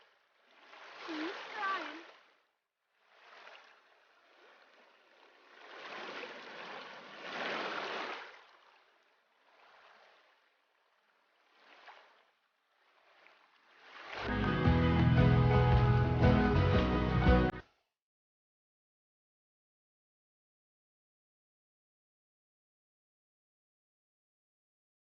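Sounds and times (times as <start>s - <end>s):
creek water rushing: 0.0s - 2.2s, 3.1s - 10.2s, 12.9s - 17.6s.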